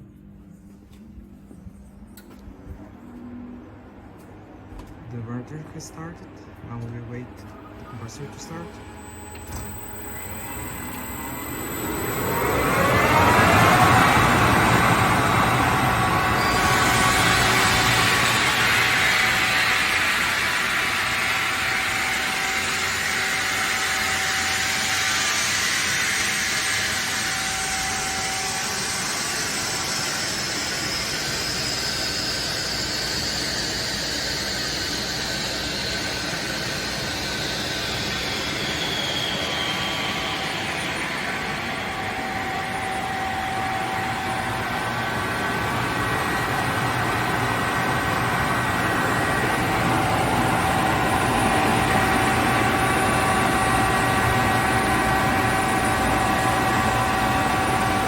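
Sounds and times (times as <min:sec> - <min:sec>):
air compressor running: 0:08.0 - 0:58.0.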